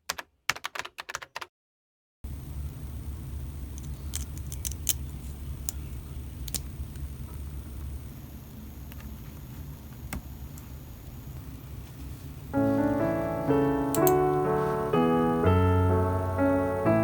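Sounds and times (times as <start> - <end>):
low background noise: 2.3 - 17.0
piano music: 12.5 - 17.0.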